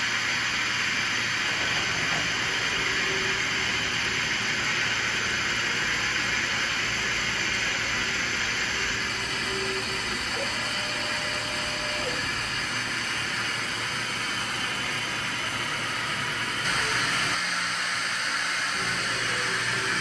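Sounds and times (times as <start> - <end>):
grinding machine hissing: 0.0 - 20.0.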